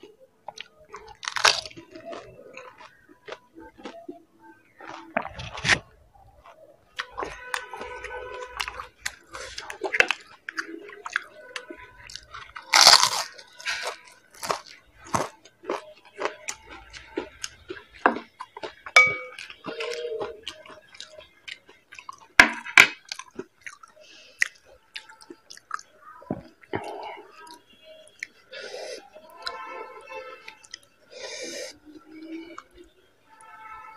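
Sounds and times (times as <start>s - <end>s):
crunching and chewing crisp food: 0.0s - 33.7s.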